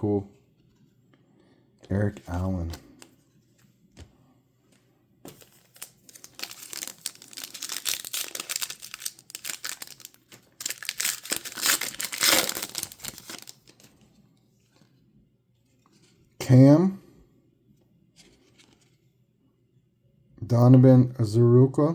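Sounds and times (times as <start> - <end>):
foil wrapper crinkling and tearing: 5.3 - 13.9.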